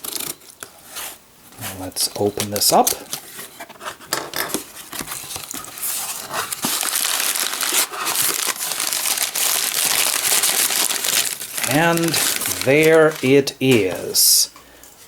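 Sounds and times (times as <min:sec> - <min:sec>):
wrapping crinkling and rustling: 0:00.0 - 0:14.4.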